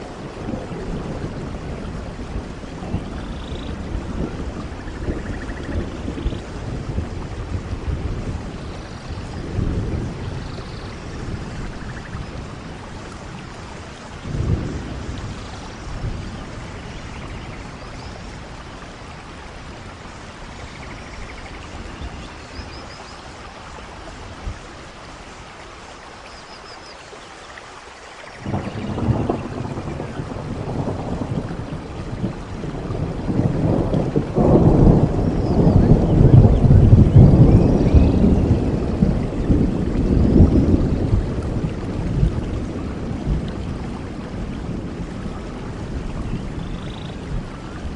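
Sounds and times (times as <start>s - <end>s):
rolling thunder: 0.0s - 22.9s, 28.4s - 47.9s
steady rain: 0.0s - 47.9s
loud thunder clap: 28.4s - 45.1s.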